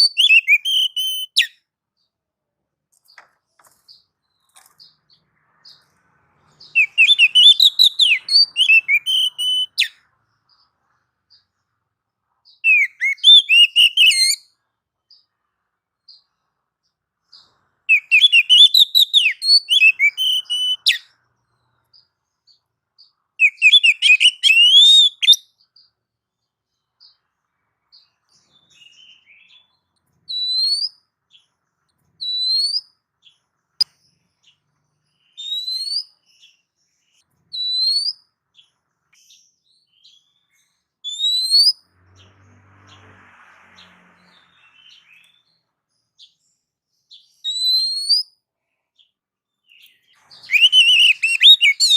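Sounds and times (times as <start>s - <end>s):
bird singing whistled notes: 0.0s - 2.1s, 6.5s - 10.6s, 12.4s - 15.3s, 17.3s - 25.9s, 27.9s - 31.5s, 32.1s - 42.3s, 44.2s - 48.4s, 49.6s - 51.9s
short rising bird whistles: 6.8s - 9.9s, 23.4s - 25.4s, 30.3s - 31.0s, 32.2s - 32.9s, 35.4s - 36.2s, 37.5s - 38.2s, 41.1s - 41.8s, 47.4s - 48.3s, 50.4s - 51.9s.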